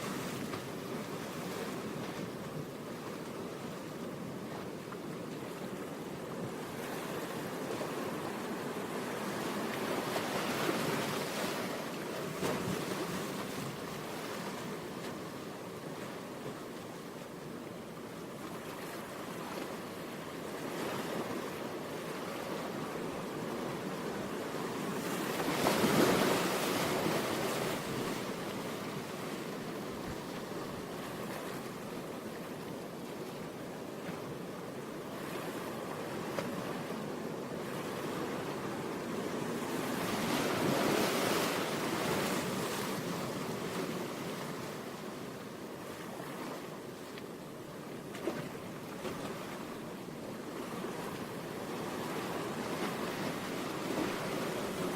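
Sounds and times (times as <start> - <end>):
ocean waves washing in: 18.9 - 54.9.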